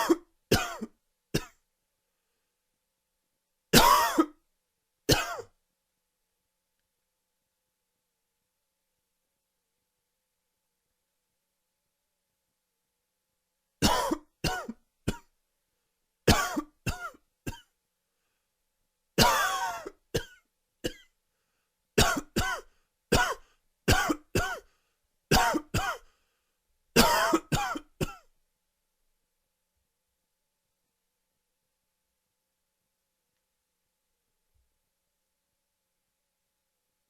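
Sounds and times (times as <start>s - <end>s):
man coughing: 0.0s - 1.6s, 3.8s - 4.3s, 13.8s - 15.3s, 19.2s - 21.1s, 22.0s - 24.7s, 25.4s - 26.1s, 27.0s - 28.3s.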